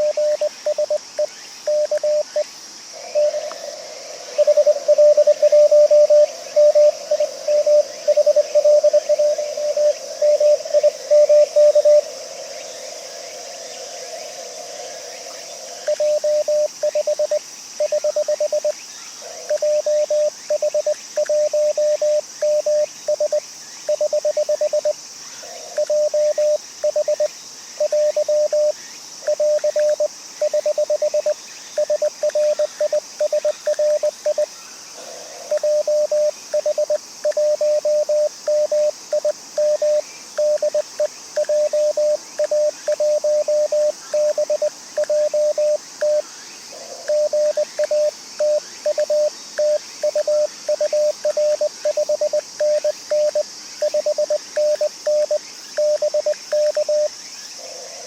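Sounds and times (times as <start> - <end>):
morse code tone: 0.0 - 1.0, 4.4 - 12.0, 35.5 - 46.2, 47.1 - 57.1.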